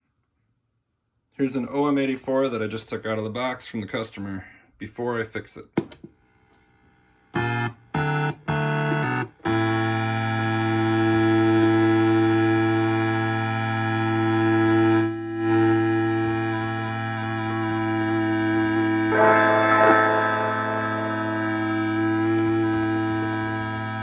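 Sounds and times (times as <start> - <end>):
electronic chord instrument: 9.6 - 24.0.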